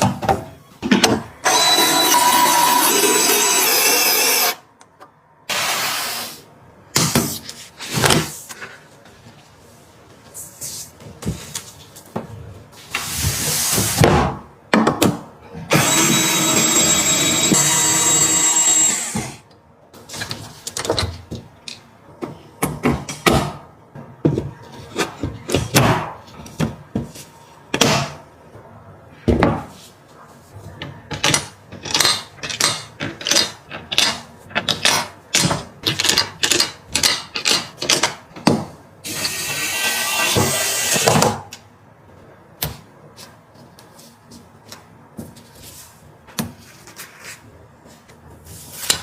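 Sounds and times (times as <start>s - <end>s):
electric screwdriver whirring: 1.5s - 4.6s, 15.7s - 19.4s.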